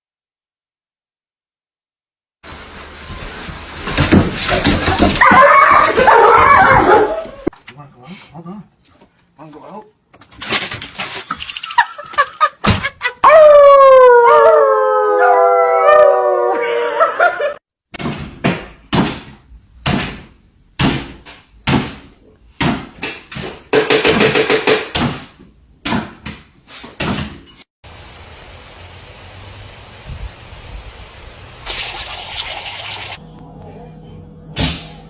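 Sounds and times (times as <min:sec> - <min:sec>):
dog howling: 0:05.2 - 0:07.5, 0:13.2 - 0:17.5.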